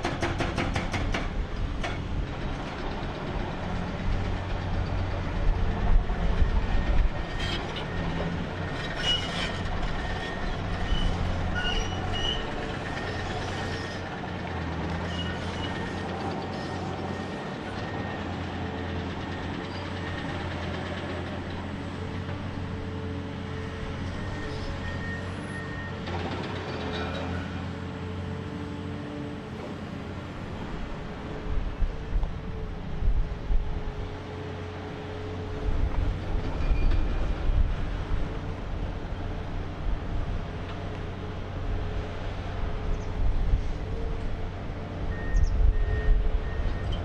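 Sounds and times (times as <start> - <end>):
excavator diesel engine running: 0.0 - 47.0
machine squealing: 2.0 - 22.9, 23.5 - 27.7, 35.9 - 38.0, 45.0 - 47.0.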